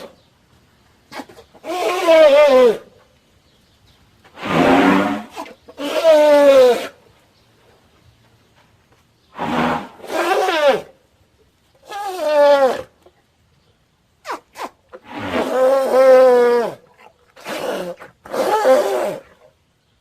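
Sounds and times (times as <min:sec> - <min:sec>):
cartoon elephant calls: 0:17.4 - 0:19.3.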